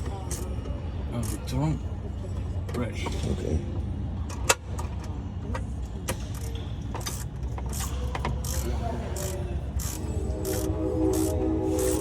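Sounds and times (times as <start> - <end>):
ratchet wrench clicking: 1.2 - 1.5, 6.3 - 11.9.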